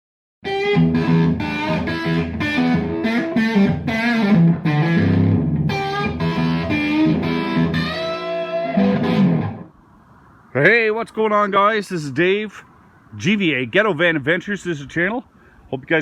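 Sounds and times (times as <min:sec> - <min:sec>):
distorted electric guitar music: 0:00.4 - 0:09.7.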